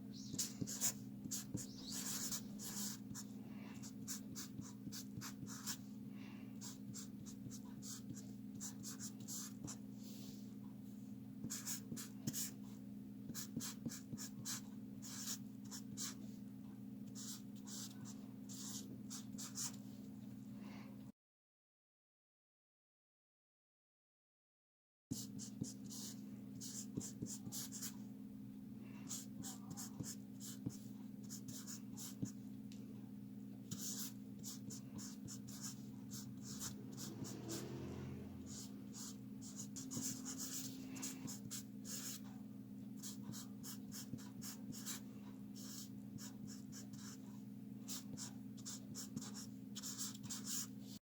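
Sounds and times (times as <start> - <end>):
low electrical hum: 0.0 - 21.1, 25.2 - 51.0
pen scratching on paper: 0.3 - 5.8, 6.6 - 9.8, 11.4 - 12.6, 13.3 - 16.2, 17.2 - 19.8, 25.2 - 27.9, 29.1 - 32.4, 33.7 - 37.8, 38.5 - 42.2, 43.0 - 45.0, 45.6 - 47.2, 47.9 - 50.7.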